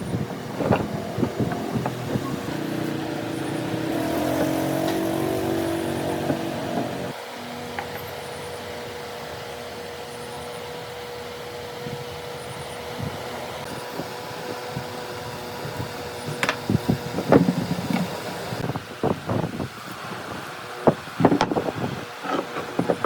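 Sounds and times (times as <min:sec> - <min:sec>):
steady machine hum: 0:00.0 - 0:18.7
quick run of knocks: 0:00.1 - 0:07.2.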